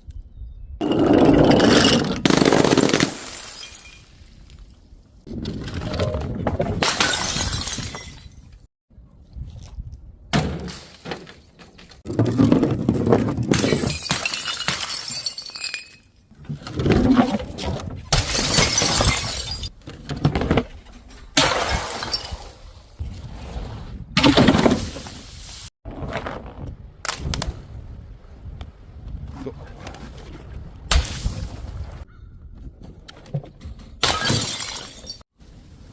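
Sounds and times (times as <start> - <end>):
glass bottles shattering: 0.8 - 4.2, 6.8 - 8.6, 13.5 - 16.2, 18.1 - 19.7, 21.4 - 22.6, 34.0 - 35.2.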